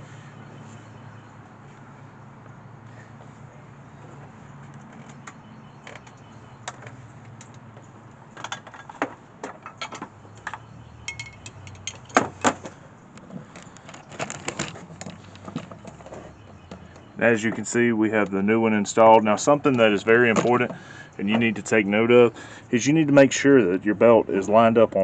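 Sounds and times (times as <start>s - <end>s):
metal hand tools clinking: 11.1s - 12.2s.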